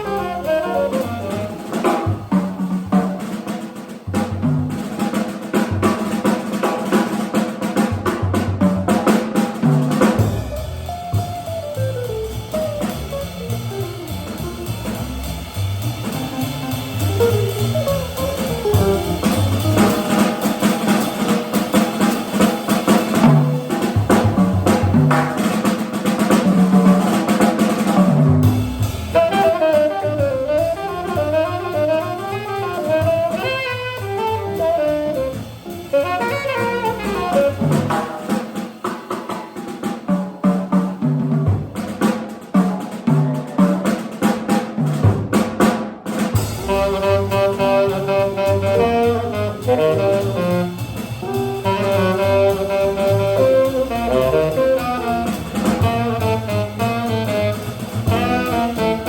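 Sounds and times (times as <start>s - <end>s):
tenor saxophone melody: 0.0s - 1.8s, 29.2s - 37.9s, 46.6s - 59.0s
jazz guitar: 0.0s - 45.6s, 46.3s - 59.0s
bass: 0.0s - 59.0s
jazz drum kit: 0.0s - 59.0s.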